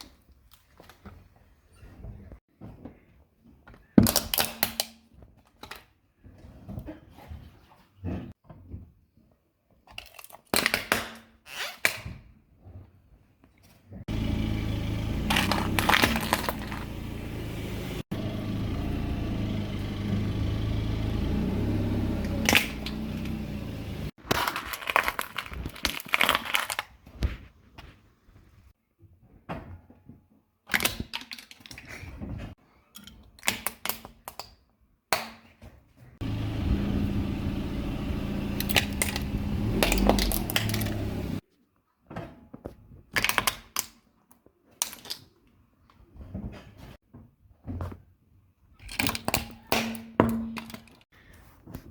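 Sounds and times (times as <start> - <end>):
car engine running: 14.1 - 24.1, 36.2 - 41.4
tyres crushing objects: 15.2 - 17.0.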